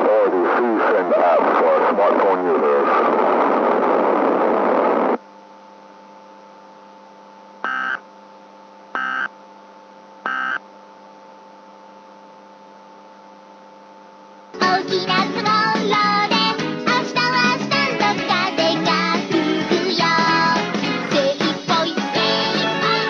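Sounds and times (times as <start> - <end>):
steady electrical hum: 0.0 - 16.8
short data tone bursts: 7.6 - 8.0, 9.0 - 9.3, 10.2 - 10.6.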